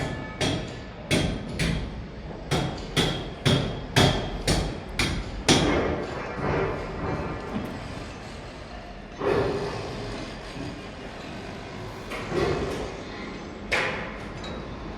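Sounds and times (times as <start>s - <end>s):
hammer blows ringing: 0.0s - 5.9s.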